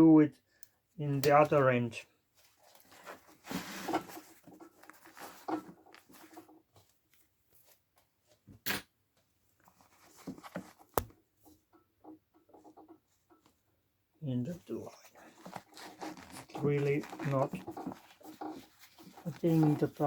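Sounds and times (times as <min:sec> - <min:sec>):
fabric rustling: 0:02.3 - 0:07.8, 0:09.6 - 0:11.0, 0:14.5 - 0:20.0
zipper teeth scraping: 0:14.8 - 0:20.0.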